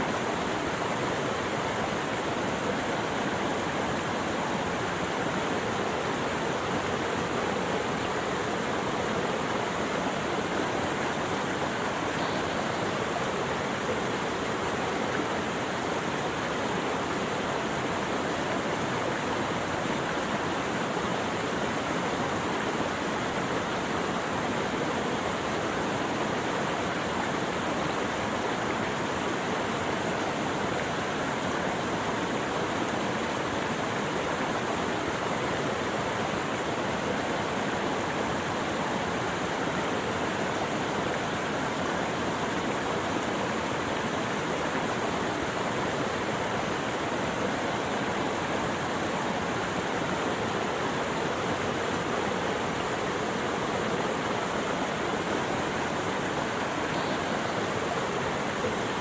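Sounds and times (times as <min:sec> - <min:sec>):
running water rushing: 0:00.0 - 0:59.0.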